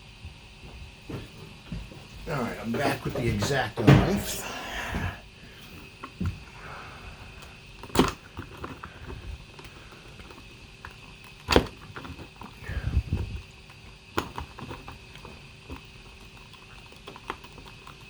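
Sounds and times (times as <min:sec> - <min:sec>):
hard plastic snapping and clicking: 0:07.4 - 0:12.6.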